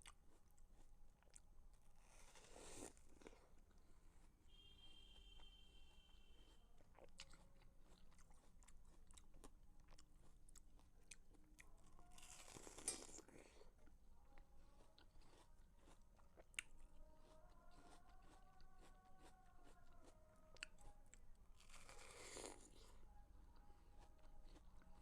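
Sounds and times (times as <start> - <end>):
crunchy chewing of watermelon: 0.0 - 4.0, 6.4 - 14.0, 14.9 - 23.1.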